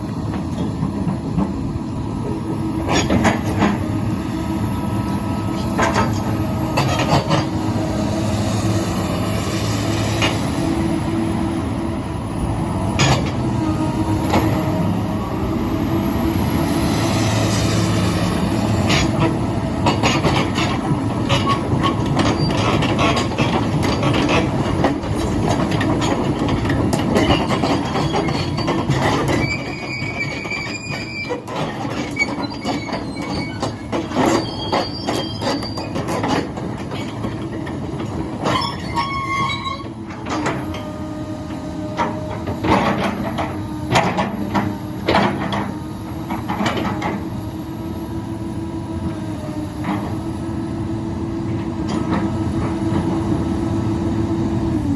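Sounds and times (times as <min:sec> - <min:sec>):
excavator engine humming: 0:00.0 - 0:54.9
metal clanking and knocking: 0:18.9 - 0:40.9, 0:41.9 - 0:47.2
steel squealing on steel: 0:28.0 - 0:36.0, 0:38.4 - 0:40.0.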